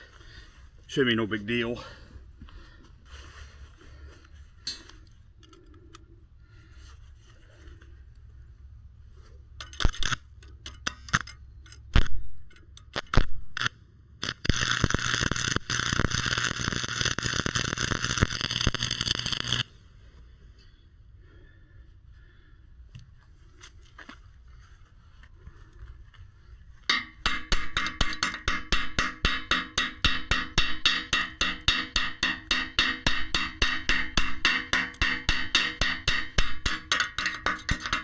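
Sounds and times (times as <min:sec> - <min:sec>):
stick welder crackling hiss: 0:13.0 - 0:19.8
loud metal clanks: 0:26.9 - 0:38.0.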